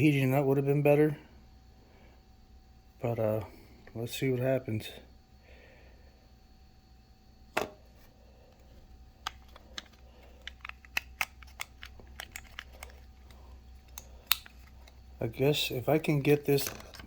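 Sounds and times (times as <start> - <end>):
plastic housing clicking: 9.2 - 15.0, 16.6 - 17.0.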